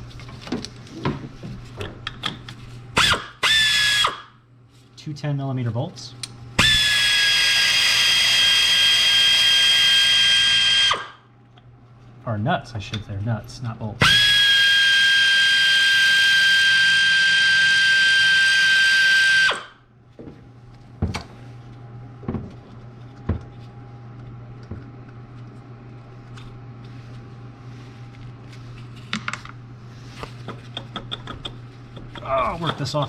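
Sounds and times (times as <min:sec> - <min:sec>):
power tool high whine: 0:03.0 - 0:04.3, 0:06.6 - 0:11.2, 0:14.0 - 0:19.8.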